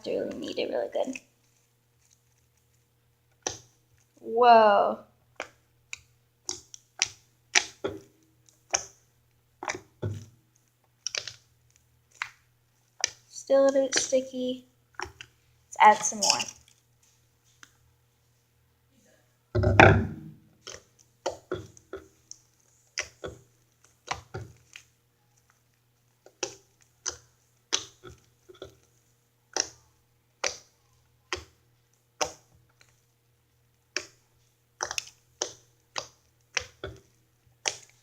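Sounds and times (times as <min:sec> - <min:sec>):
slime squelching and popping: 0:00.0 - 0:17.9, 0:19.6 - 0:38.0
slime thump: 0:19.6 - 0:21.7.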